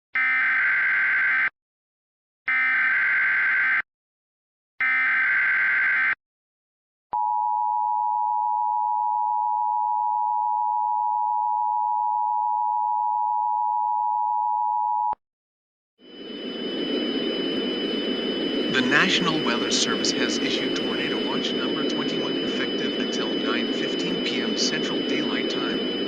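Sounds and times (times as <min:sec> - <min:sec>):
digital data bursts: 0:17.8 - 0:26.0.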